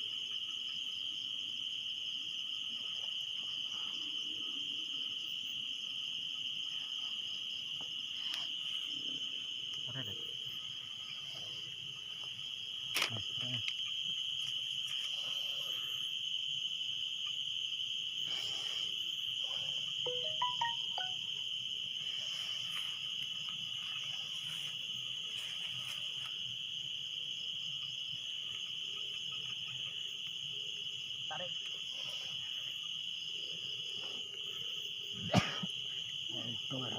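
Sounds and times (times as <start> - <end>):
insects trilling: 0.0 - 36.9.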